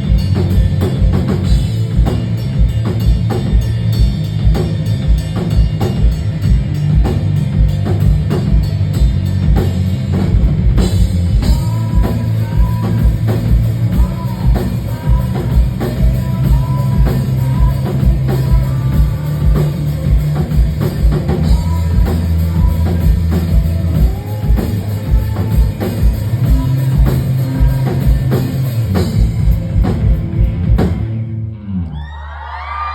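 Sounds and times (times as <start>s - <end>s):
rock band playing: 0.0s - 32.0s
person singing: 11.3s - 29.3s.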